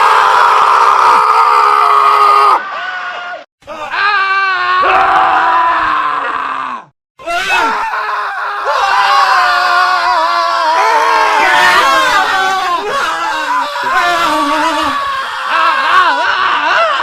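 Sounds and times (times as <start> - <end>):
men screaming: 0.0 - 17.0.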